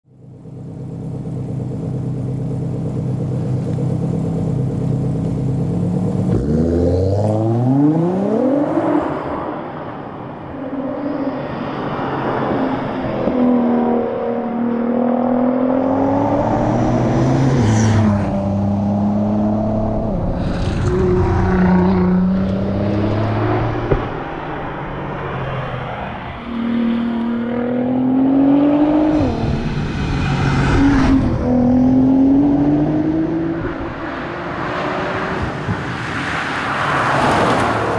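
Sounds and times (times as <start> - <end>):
car engine revving and accelerating: 0.4 - 37.9.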